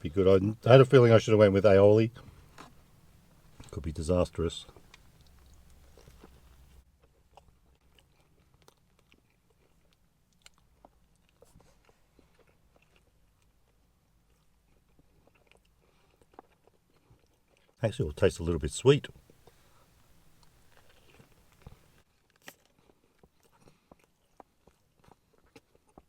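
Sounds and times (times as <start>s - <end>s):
person chewing: 4.6s - 17.8s, 19.2s - 26.0s.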